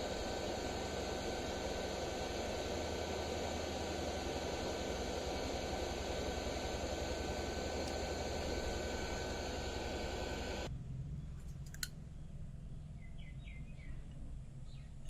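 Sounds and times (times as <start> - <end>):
hot-air station hissing: 0.0 - 10.7
sharp clicks: 0.0 - 10.7.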